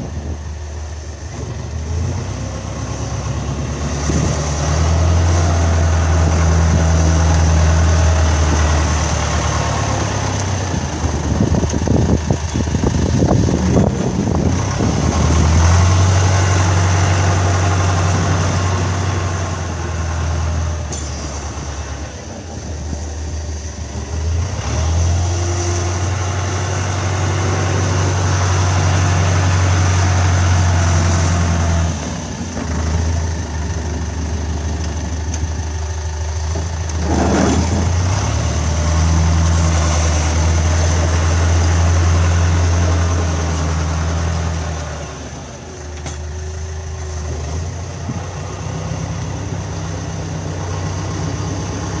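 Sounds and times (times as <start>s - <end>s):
tractor engine running: 0.0s - 52.0s.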